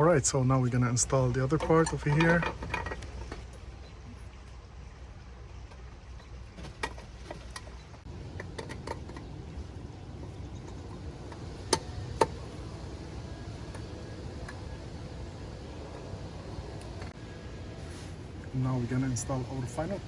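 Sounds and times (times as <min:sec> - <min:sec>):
low background rumble: 0:00.0 - 0:20.0
glass and metal parts clicking: 0:01.5 - 0:03.6.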